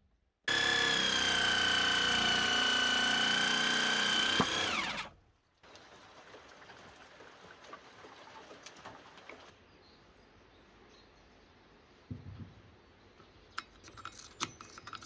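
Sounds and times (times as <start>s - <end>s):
power tool motor whine: 0.5s - 5.2s.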